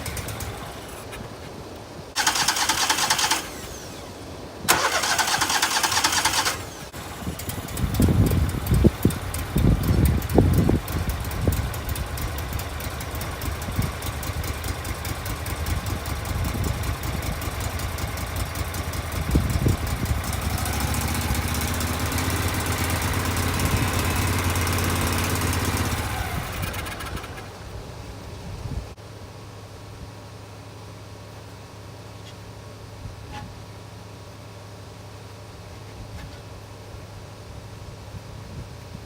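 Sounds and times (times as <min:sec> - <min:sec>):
sawmill engine running: 0:00.0 - 0:28.8.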